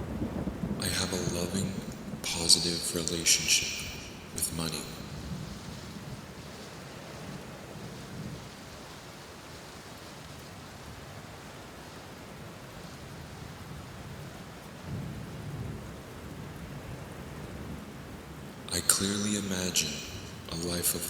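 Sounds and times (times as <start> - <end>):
low roll of thunder: 0.0 - 9.2, 14.8 - 19.0
steady rain falling: 0.0 - 21.0.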